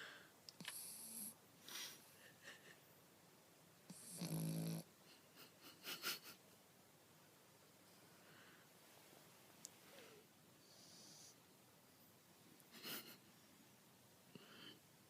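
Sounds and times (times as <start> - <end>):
puppy snoring: 0.6 - 1.4, 3.9 - 4.9, 10.6 - 11.4
puppy snorts: 3.9 - 4.9.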